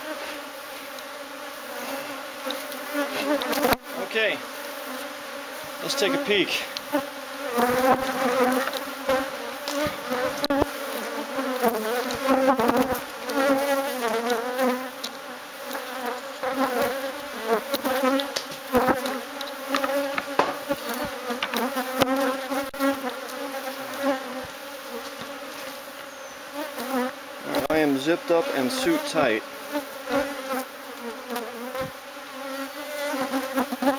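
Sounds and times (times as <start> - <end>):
bees buzzing: 0.0 - 33.9
sharp clicks and knocks: 18.2 - 20.6, 21.4 - 22.1.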